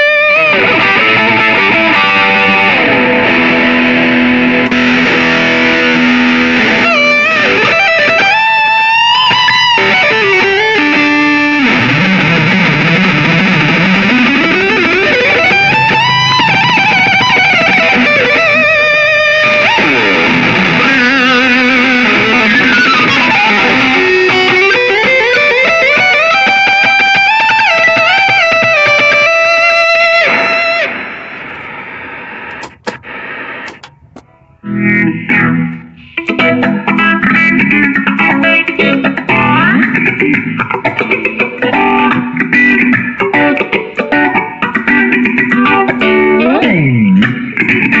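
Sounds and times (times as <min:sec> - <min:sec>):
electric guitar lead line: 0:00.0 - 0:48.0.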